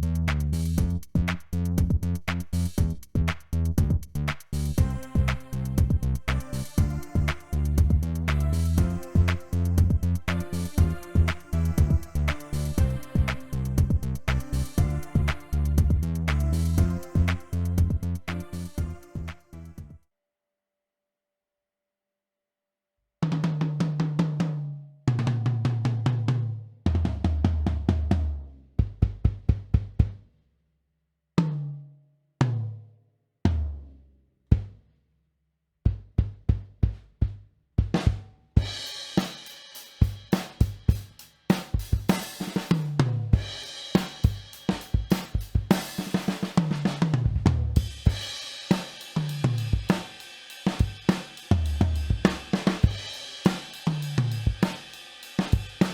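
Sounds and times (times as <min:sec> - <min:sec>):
bass drum and snare beat: 0:00.0 - 0:19.9, 0:26.9 - 0:30.3, 0:35.9 - 0:55.9
hi-hat and cymbals: 0:00.0 - 0:19.9, 0:37.9 - 0:55.9.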